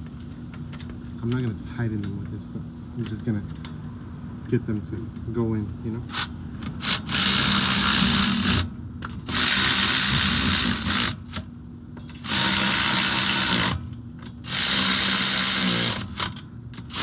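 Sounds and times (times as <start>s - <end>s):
power ratchet spinning bolts: 6.1s - 11.4s, 12.1s - 17.0s.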